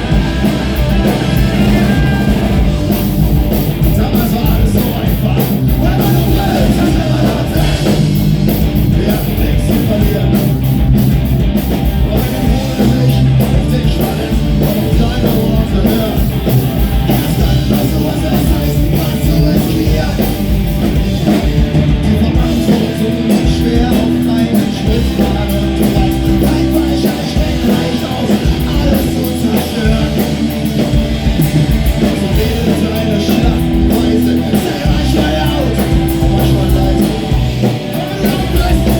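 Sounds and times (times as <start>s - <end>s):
person shouting singing: 0.0s - 3.1s, 3.7s - 8.0s, 32.2s - 38.9s
bass guitar: 0.0s - 38.9s
distorted electric guitars: 0.0s - 38.9s
drums: 0.0s - 38.9s.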